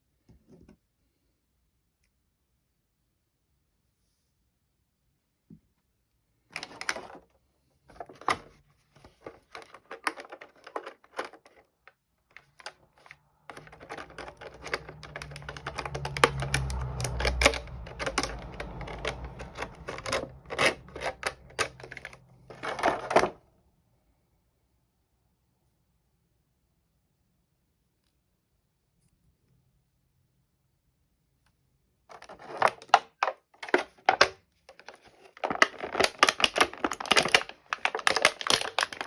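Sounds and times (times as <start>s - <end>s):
plastic and cardboard crackling: 6.5s - 7.3s, 7.9s - 23.4s, 32.1s - 39.0s.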